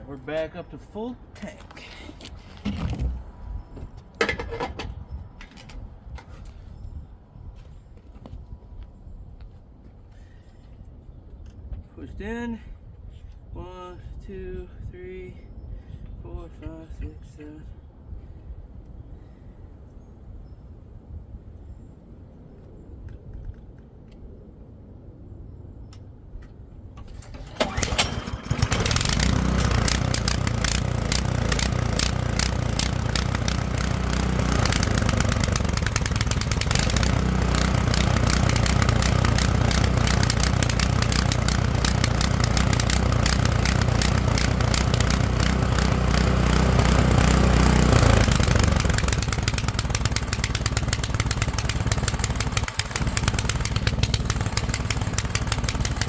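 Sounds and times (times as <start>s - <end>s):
snowblower engine starting and running: 27.0s - 56.0s.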